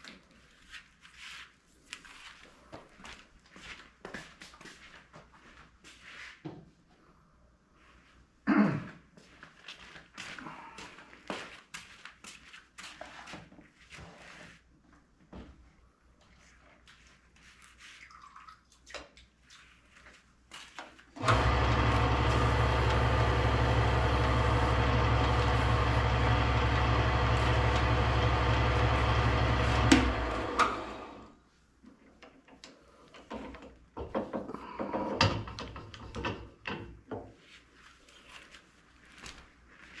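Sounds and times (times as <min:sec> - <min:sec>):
electric motor running: 0:21.2 - 0:31.3
motor winding down: 0:21.2 - 0:31.3.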